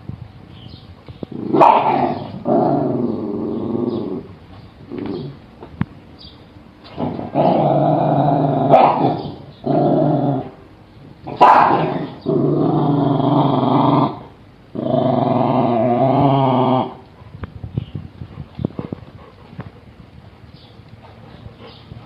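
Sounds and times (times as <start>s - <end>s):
dog growling: 1.4s - 5.4s, 6.9s - 10.6s, 11.3s - 17.0s.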